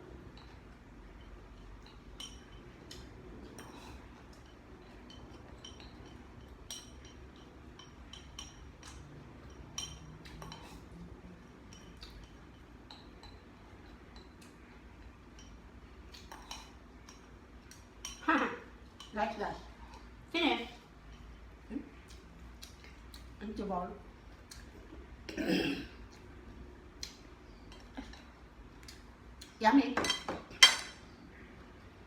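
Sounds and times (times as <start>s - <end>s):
low steady hum: 0.0s - 32.0s
utensils clinking against bowl: 0.4s - 10.9s, 30.0s - 31.1s.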